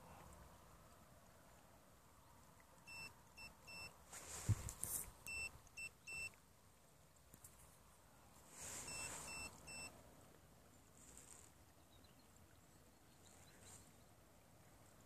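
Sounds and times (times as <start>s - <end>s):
brief hiss: 4.1s - 5.4s, 8.4s - 9.8s
short high electronic beeps: 8.9s - 9.9s.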